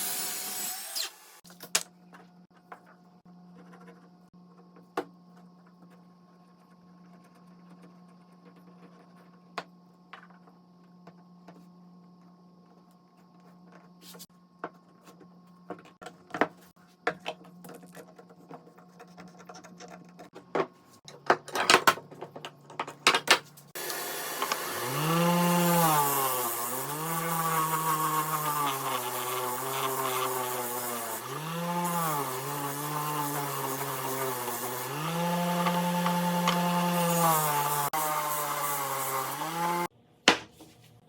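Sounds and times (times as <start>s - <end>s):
power tool motor running: 23.8s - 39.9s
wood and tools knocking: 34.9s - 37.6s.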